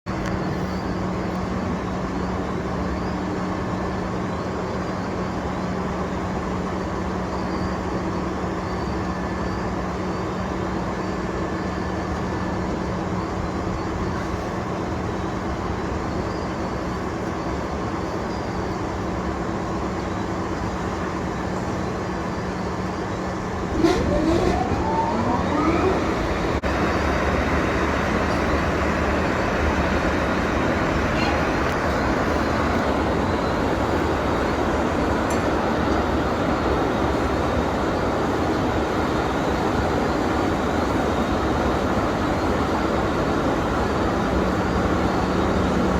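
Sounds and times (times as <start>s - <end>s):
excavator mechanical hum: 0.1s - 45.9s
rising whine: 21.9s - 35.4s.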